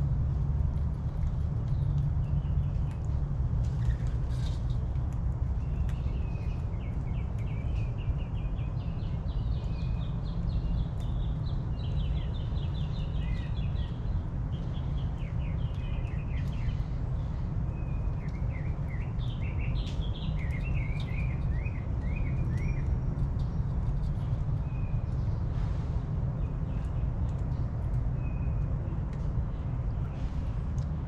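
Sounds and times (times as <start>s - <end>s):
steady low rumble: 0.0s - 31.0s
birds chirping: 5.6s - 25.5s.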